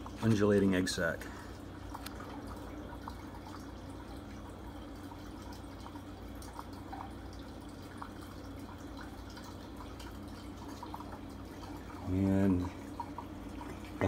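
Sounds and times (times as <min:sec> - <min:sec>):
steady low hum: 0:00.0 - 0:14.0
water trickling and dripping: 0:00.0 - 0:14.0.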